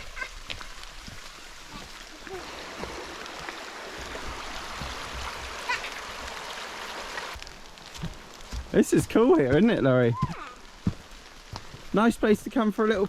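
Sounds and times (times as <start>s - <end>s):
river water rushing: 0.0s - 7.4s.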